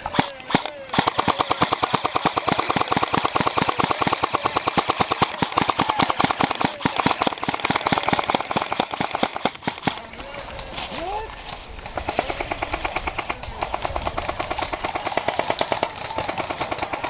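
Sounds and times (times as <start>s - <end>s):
airsoft guns firing full auto: 0.0s - 17.0s.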